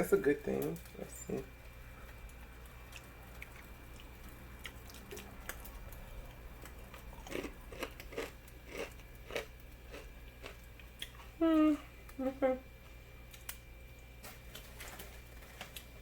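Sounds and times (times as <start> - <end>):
person chewing crunchy food: 2.0 - 11.4.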